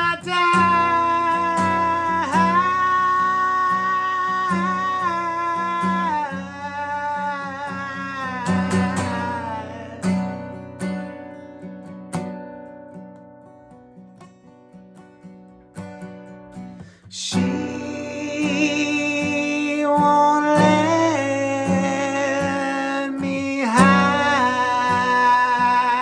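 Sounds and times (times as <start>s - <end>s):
acoustic guitar strumming: 0.0s - 26.0s.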